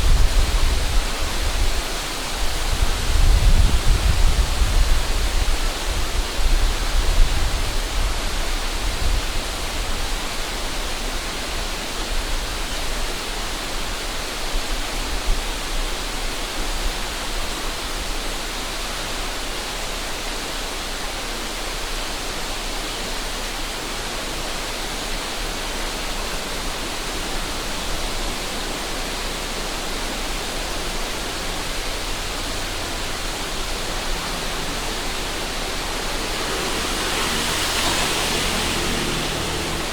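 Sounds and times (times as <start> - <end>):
wind rumble on microphone: 0.0 - 19.0
river rushing: 0.0 - 39.9.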